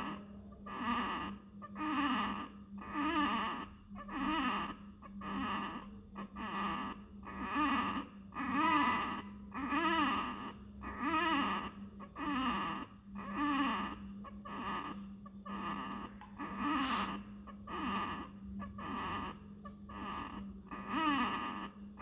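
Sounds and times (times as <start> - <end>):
steady low hum: 8.3 - 10.0.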